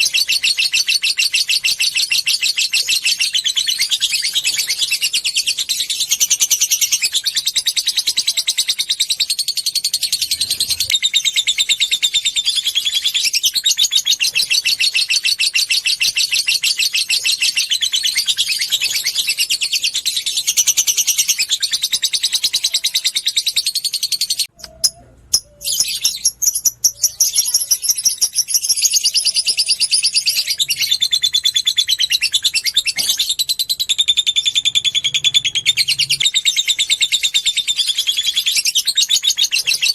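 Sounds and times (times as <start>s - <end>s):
lovebird chattering: 0.0s - 39.9s.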